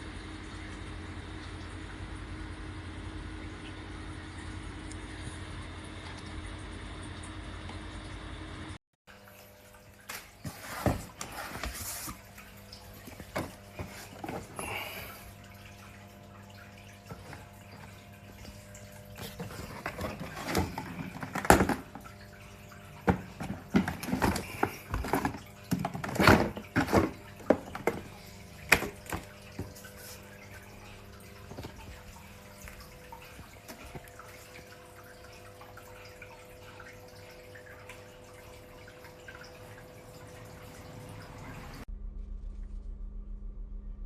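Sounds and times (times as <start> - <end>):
faint steady hum: 0.0 - 44.0
water splashing and dripping: 9.1 - 41.9.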